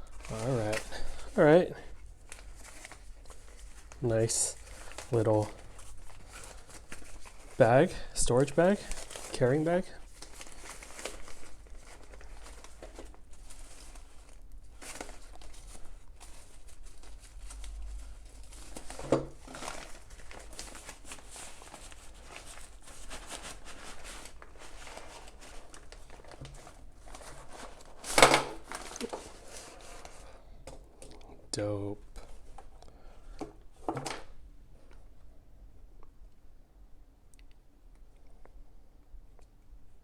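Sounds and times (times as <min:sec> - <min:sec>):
plastic packaging crinkling: 0:00.0 - 0:30.4.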